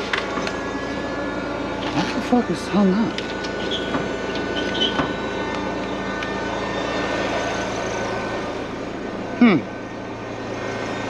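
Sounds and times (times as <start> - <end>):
forklift engine running: 0.0 - 11.0.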